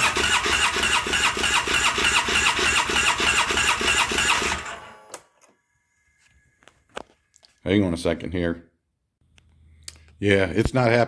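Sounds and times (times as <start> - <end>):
engine cranking on starter: 0.0 - 5.0.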